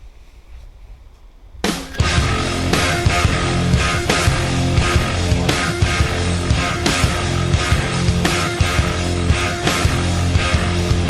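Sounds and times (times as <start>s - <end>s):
heavy rock music: 1.8s - 9.0s.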